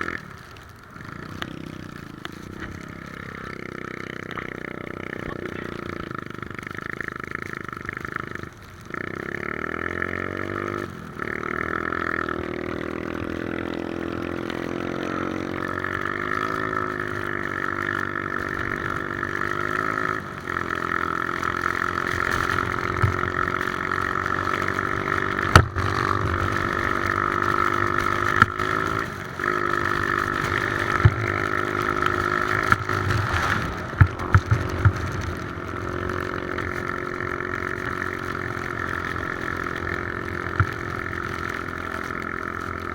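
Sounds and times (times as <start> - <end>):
atv engine running: 0.0 - 42.9.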